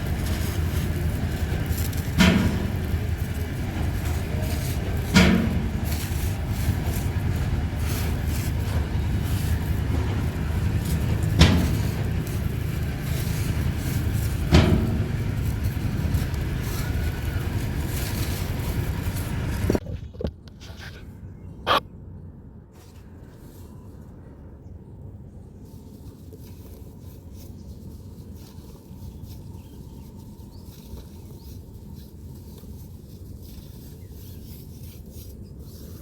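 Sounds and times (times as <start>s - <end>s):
low rumble: 0.0s - 20.2s
sharp knocks: 1.7s - 19.8s.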